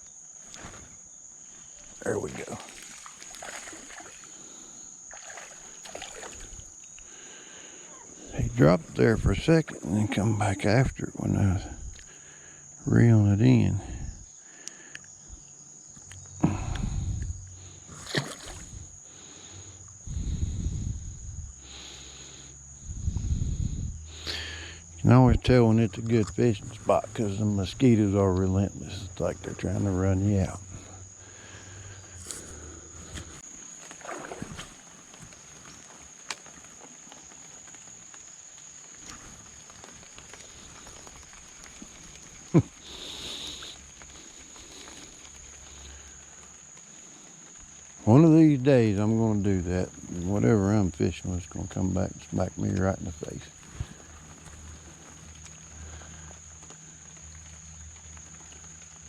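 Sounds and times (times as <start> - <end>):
creek water splashing: 1.5 - 10.8, 17.6 - 19.6, 26.0 - 48.0, 53.2 - 59.0.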